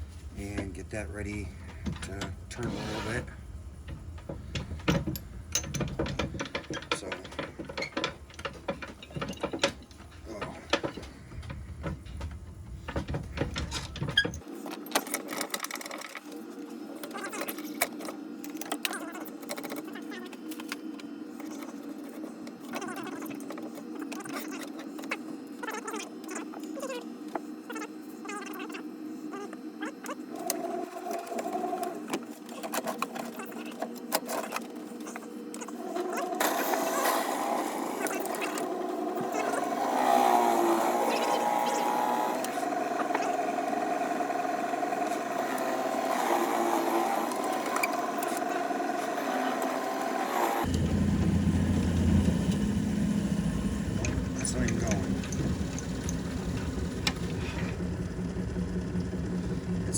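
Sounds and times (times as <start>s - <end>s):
wood lathe running: 0.0s - 14.5s, 30.3s - 34.7s, 35.6s - 59.9s
drill bit scraping wet wood: 0.3s - 3.5s, 35.1s - 51.1s
mechanical clicking and rattling: 3.4s - 16.4s
drill bit boring into wood: 4.0s - 14.4s, 35.6s - 59.0s.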